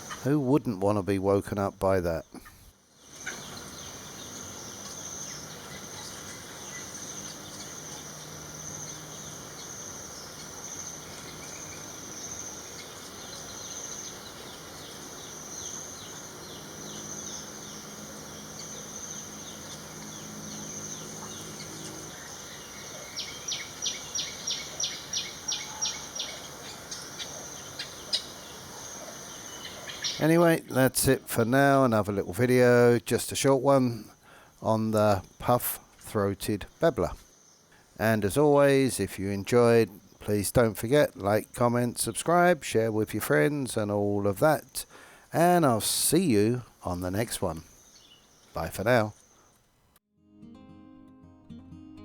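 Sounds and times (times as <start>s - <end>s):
high-pitched insect drone: 4.2s - 30.2s.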